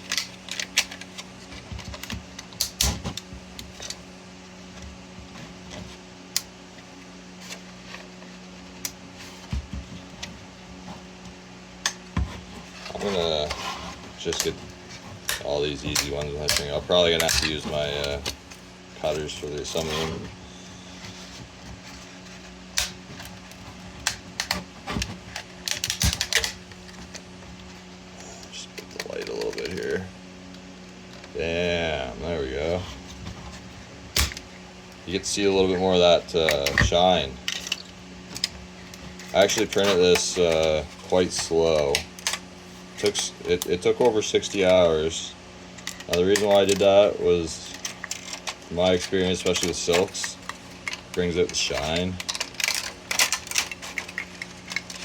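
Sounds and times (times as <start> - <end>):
plastic snapping and cracking: 0.0 - 4.0, 14.2 - 20.3, 21.0 - 27.7, 28.6 - 31.4, 34.1 - 34.5, 36.0 - 44.8, 45.7 - 55.0
steady low hum: 0.0 - 55.0
plastic supports snapping and cracking: 22.7 - 27.7, 45.8 - 55.0.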